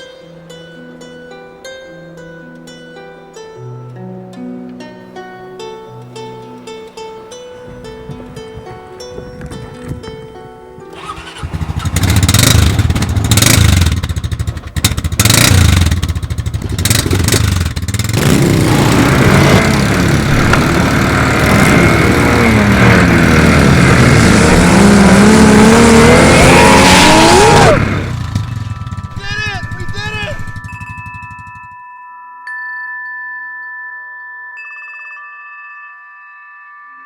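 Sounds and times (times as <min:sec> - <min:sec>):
motor engine running hard: 0:11.0 - 0:31.7.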